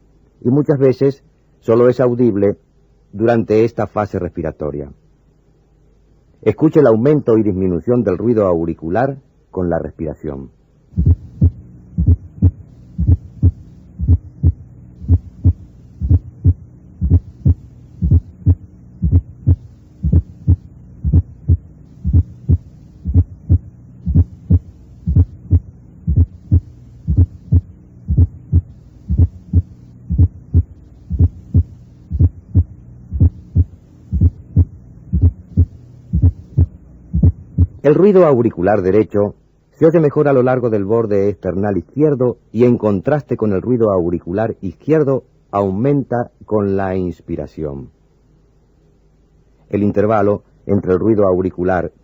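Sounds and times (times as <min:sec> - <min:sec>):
faint steady hum: 0:00.0 - 0:52.0
heartbeat through stethoscope: 0:11.0 - 0:37.8
low-pitched heart sound: 0:11.0 - 0:37.8.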